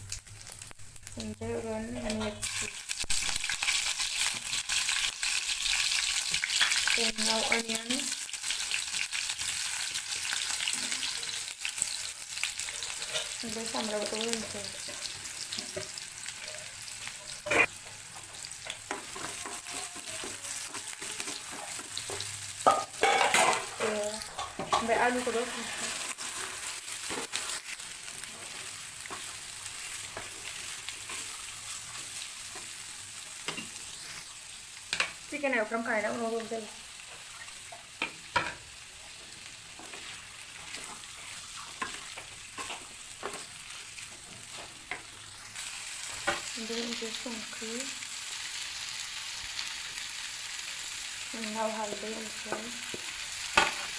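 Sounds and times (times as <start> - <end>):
food sizzling in oil: 0.0 - 53.9
spatula scraping a pan: 12.6 - 13.4, 14.4 - 17.8, 18.9 - 32.8, 37.1 - 45.6.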